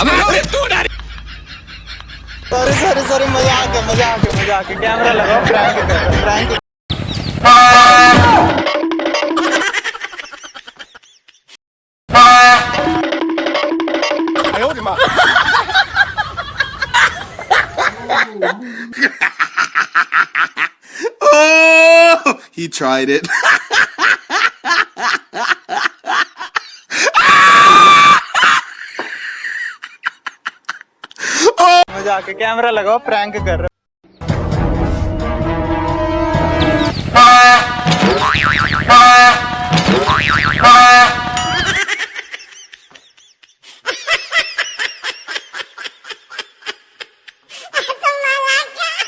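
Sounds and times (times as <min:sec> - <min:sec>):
person laughing: 0:09.2 - 0:11.5, 0:14.9 - 0:20.7
train horn blast: 0:34.9 - 0:38.1, 0:38.9 - 0:39.8, 0:40.7 - 0:41.4.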